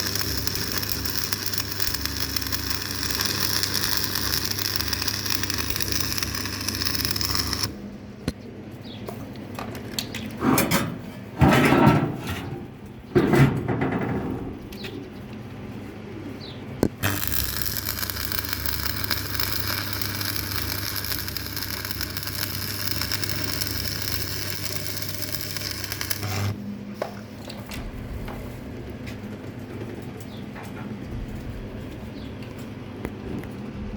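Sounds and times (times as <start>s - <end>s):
welding arc hiss and crackle: 0.0s - 7.8s, 16.9s - 27.2s
welding arc strike click: 0.0s - 7.8s, 16.9s - 26.6s
low mains hum: 0.0s - 33.9s.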